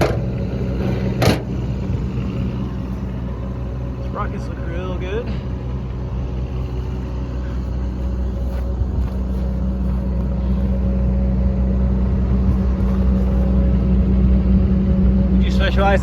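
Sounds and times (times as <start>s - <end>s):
excavator diesel engine idling: 0.0s - 16.0s.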